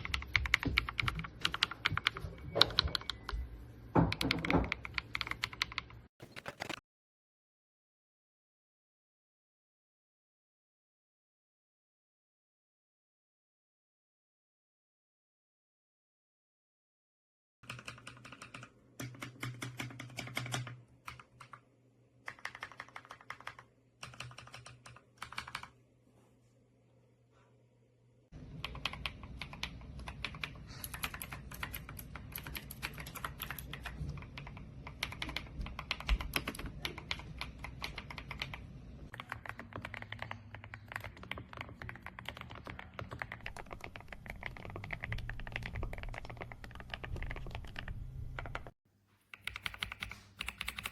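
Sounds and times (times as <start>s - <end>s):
typing on mechanical keyboard: 0.0s - 3.4s, 4.1s - 6.8s, 17.6s - 21.6s, 22.3s - 25.7s, 28.6s - 50.9s.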